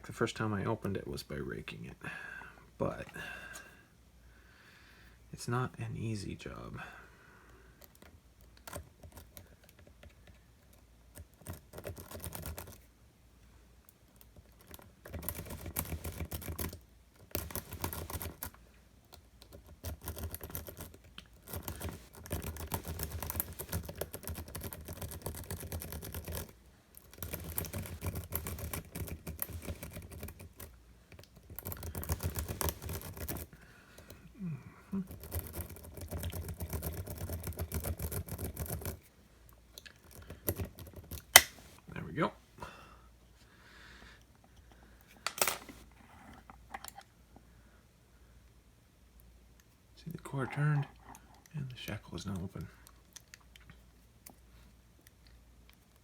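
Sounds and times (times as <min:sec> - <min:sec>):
lock pins clicking: 0:41.0 - 0:41.7.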